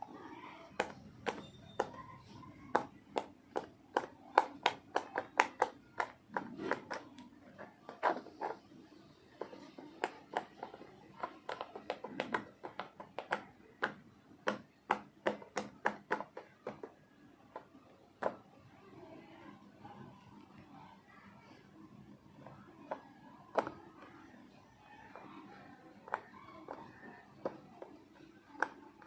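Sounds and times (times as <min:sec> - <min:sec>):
fidget toy bubbles popping: 0:09.4 - 0:18.4.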